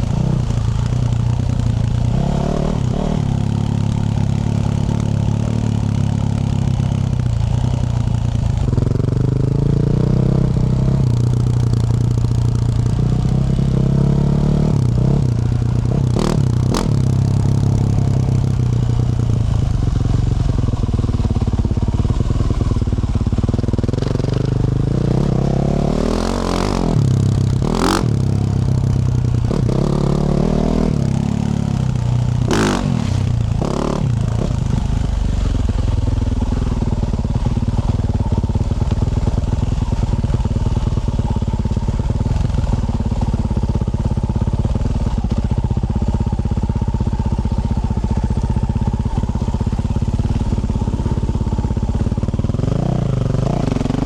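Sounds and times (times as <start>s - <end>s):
dirt bike engine revving: 0.0s - 6.1s, 12.8s - 20.5s, 23.7s - 35.8s.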